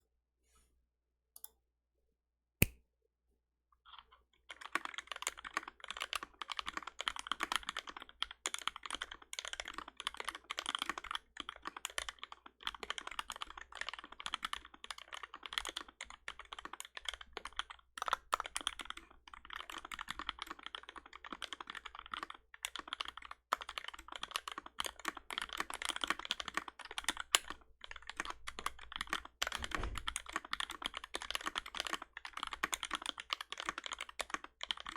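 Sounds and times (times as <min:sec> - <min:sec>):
fast typing on keyboard: 0:04.5 - 0:34.9.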